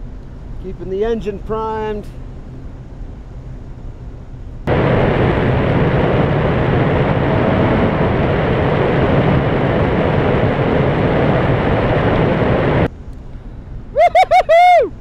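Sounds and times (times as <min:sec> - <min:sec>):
wind rush over microphone: 0:02.3 - 0:12.9
paramotor engine running: 0:04.6 - 0:12.9.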